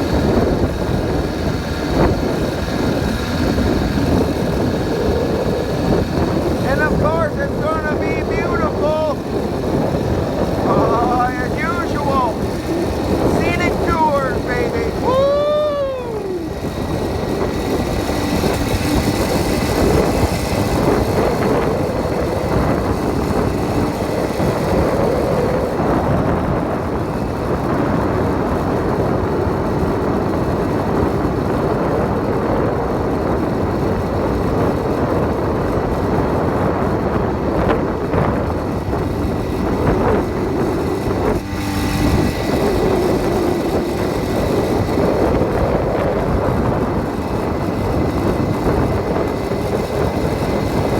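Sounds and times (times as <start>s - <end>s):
small two-stroke engine buzzing: 0.0s - 50.9s
wind on microphone: 0.0s - 50.9s.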